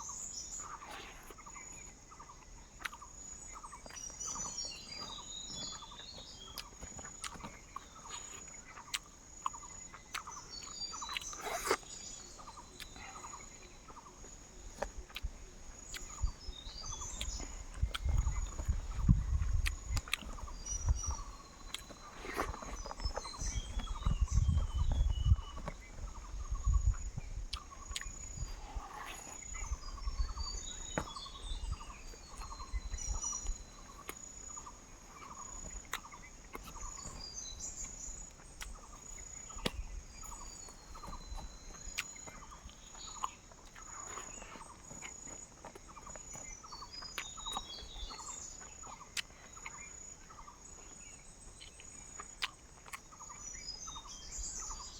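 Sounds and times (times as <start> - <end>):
birds chirping: 0.0 - 54.9
insects chirping: 0.0 - 54.9.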